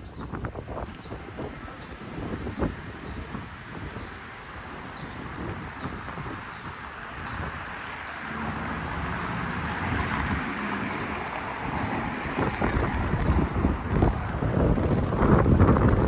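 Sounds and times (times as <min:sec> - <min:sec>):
traffic noise: 0:00.0 - 0:16.0
wind buffeting microphone: 0:00.0 - 0:16.0
vehicle passing: 0:06.2 - 0:16.0.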